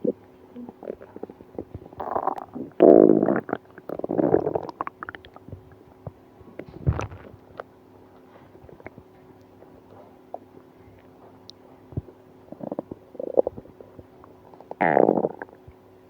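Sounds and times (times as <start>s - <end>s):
stomach gurgling: 0.0s - 7.7s, 8.6s - 9.1s, 11.9s - 15.8s.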